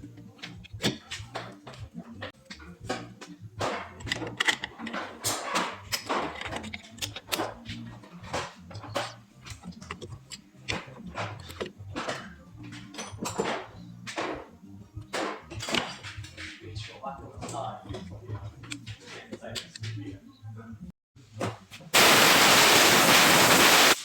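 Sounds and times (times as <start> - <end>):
metallic clicks of hand tools: 3.9 - 7.6, 8.8 - 11.8.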